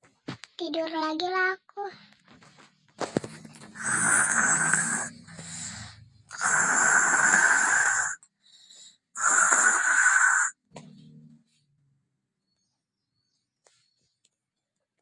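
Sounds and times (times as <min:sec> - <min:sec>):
person snoring: 0:03.4 - 0:08.2, 0:09.1 - 0:10.7.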